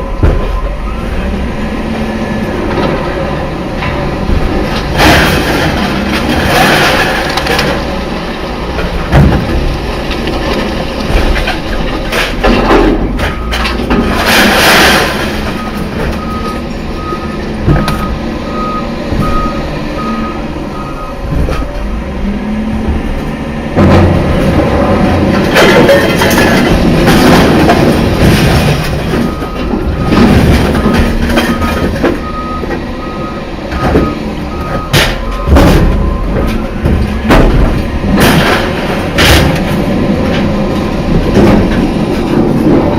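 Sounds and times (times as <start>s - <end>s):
heavy vehicle rumbling: 0.0s - 42.9s
reversing beeper: 15.5s - 21.7s, 29.1s - 37.0s.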